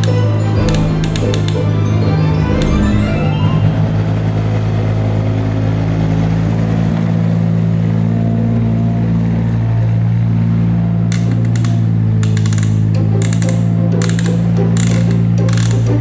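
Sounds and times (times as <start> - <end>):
low motor hum: 0.0 - 16.0
rapid ratchet clicking: 11.2 - 16.0.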